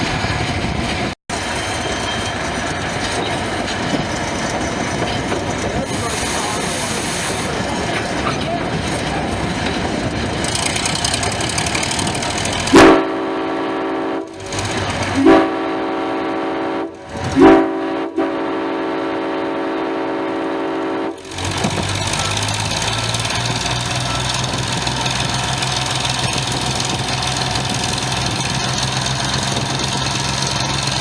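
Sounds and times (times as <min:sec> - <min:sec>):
passenger train running on track: 0:00.0 - 0:31.0
locomotive air horn blasts: 0:12.5 - 0:21.6.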